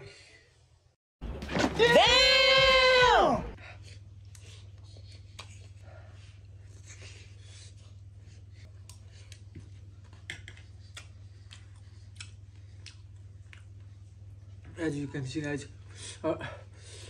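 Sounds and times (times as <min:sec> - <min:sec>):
chewing clicks and smacks: 0:08.8 - 0:14.1.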